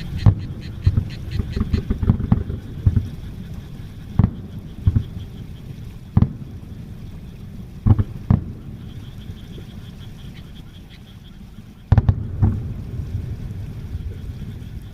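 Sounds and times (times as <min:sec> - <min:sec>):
fireworks booming: 0:00.0 - 0:03.2, 0:04.1 - 0:05.4, 0:06.1 - 0:07.0, 0:07.8 - 0:09.1, 0:11.9 - 0:14.4
low rumble: 0:12.1 - 0:14.9.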